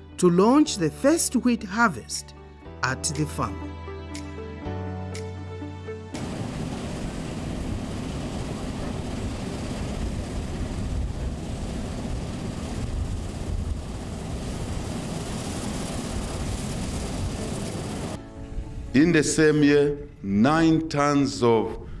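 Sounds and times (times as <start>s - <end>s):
combine harvester running: 6.2s - 18.2s.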